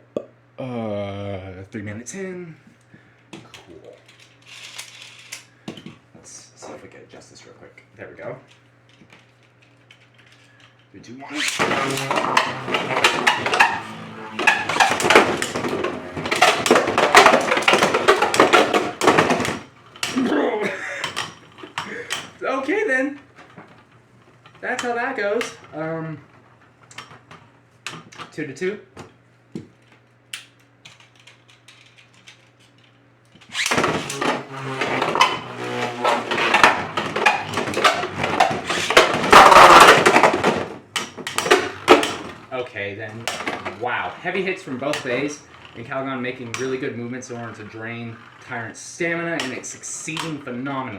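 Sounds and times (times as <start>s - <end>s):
spinning tops clacking and rattling: 11.4s - 20.2s, 33.5s - 42.5s.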